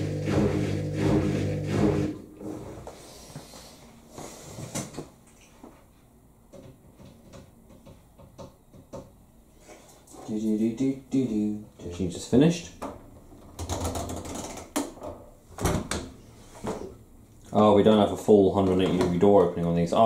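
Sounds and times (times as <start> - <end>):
washing machine hum: 0.0 - 3.0.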